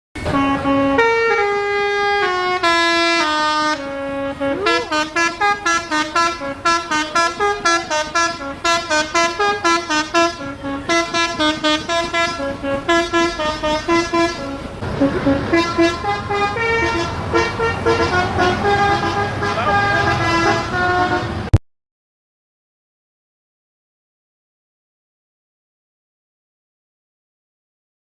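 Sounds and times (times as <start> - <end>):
bus musical horn playing a tune: 0.2 - 21.6.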